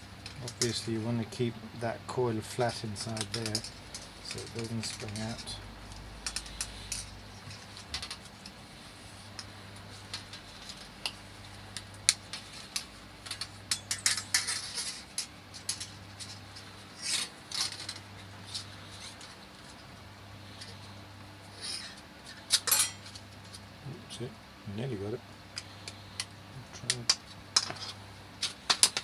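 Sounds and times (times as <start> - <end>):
spring steel scraping housing: 12.3 - 19.3, 21.5 - 23.2.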